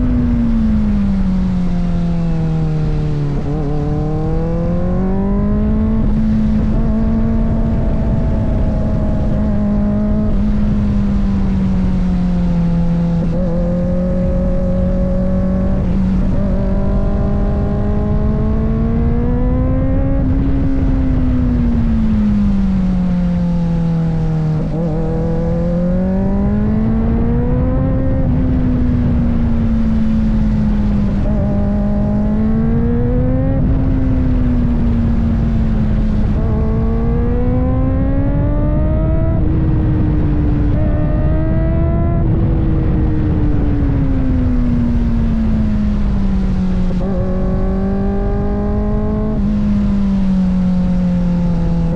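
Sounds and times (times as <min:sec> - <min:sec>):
wind and road rush: 0:00.0 - 0:51.9
motorcycle engine running: 0:03.0 - 0:51.9.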